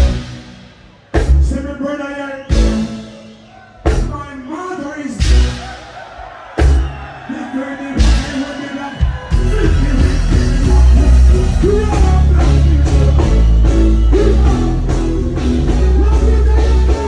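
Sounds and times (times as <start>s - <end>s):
heavy bass line: 0.0s - 1.9s, 5.2s - 5.8s, 9.0s - 17.0s
live band music: 0.0s - 7.1s, 7.9s - 17.0s
person singing: 7.6s - 17.0s.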